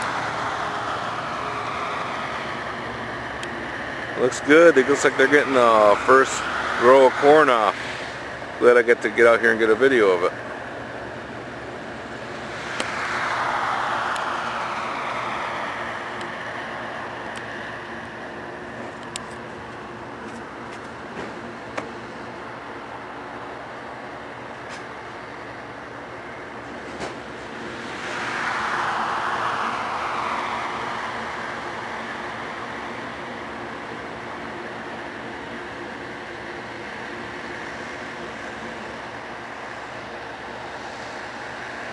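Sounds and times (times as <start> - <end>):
vehicle passing: 0.0 - 20.6, 26.2 - 34.0
combine engine running: 0.0 - 41.9
rush of noise: 0.0 - 41.9
steady rumble: 0.0 - 41.9.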